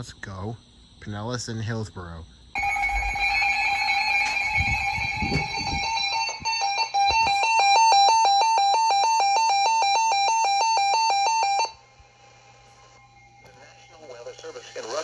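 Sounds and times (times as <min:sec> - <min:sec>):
alternating two-tone alert: 0:02.6 - 0:08.8.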